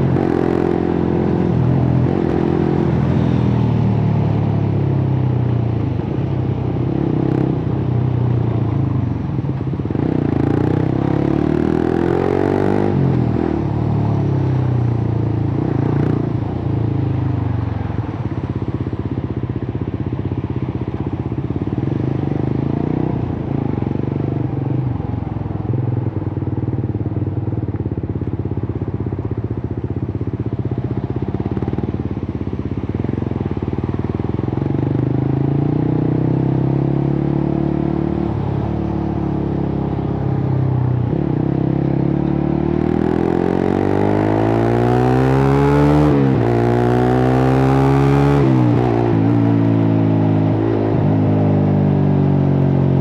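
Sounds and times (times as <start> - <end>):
motorcycle engine revving: 0.0 - 8.5, 9.6 - 18.0, 30.5 - 53.0.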